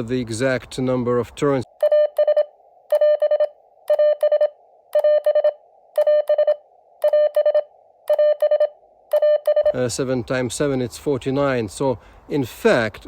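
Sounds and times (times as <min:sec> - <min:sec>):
morse code beeps: 0:01.8 - 0:09.8.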